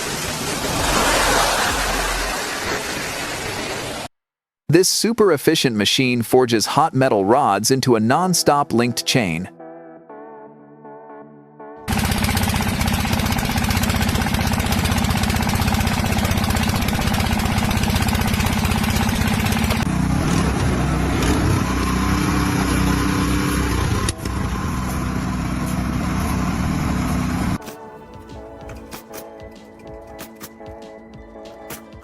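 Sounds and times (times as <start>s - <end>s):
rhythmic machinery running: 11.9s - 20.8s.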